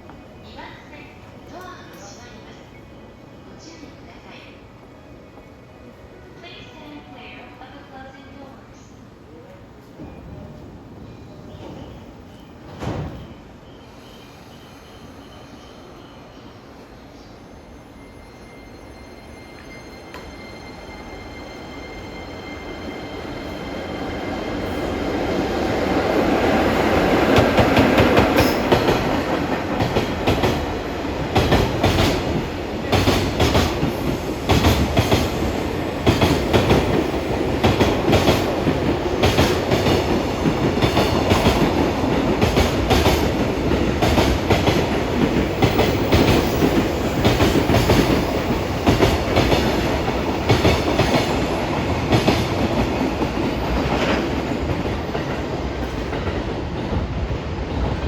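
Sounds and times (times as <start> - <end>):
electric locomotive passing: 0.0 - 58.0.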